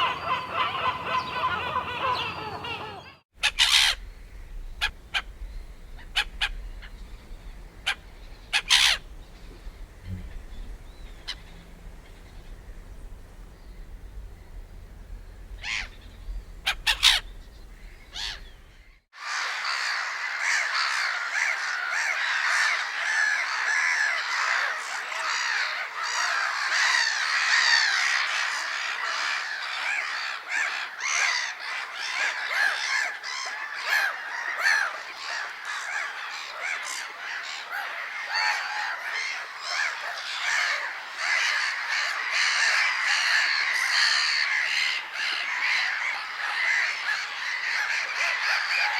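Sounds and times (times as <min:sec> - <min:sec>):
gulls calling and squawking: 0:00.0 - 0:48.9
low rumble: 0:03.5 - 0:19.0.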